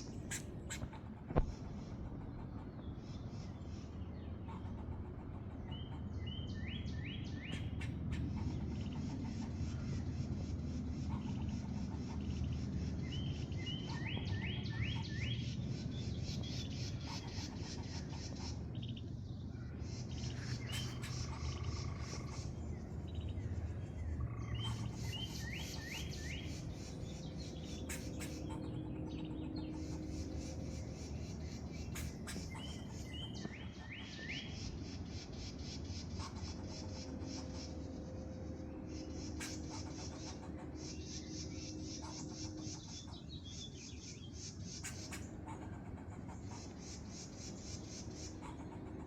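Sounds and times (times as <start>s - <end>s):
squirrel chirping: 20.2s - 23.3s, 24.2s - 37.8s, 38.9s - 49.0s.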